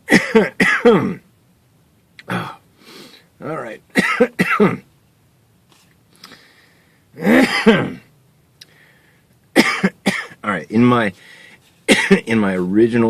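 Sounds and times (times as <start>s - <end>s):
man clearing throat and coughing: 0.0s - 1.2s, 2.2s - 2.6s, 3.9s - 4.9s, 7.2s - 8.1s, 9.6s - 10.6s, 11.9s - 12.4s.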